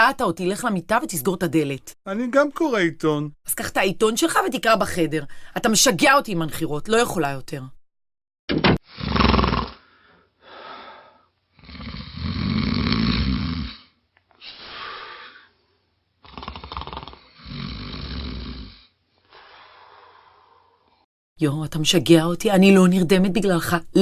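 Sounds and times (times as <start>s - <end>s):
man snoring heavily: 8.8s - 14.0s, 16.2s - 20.9s.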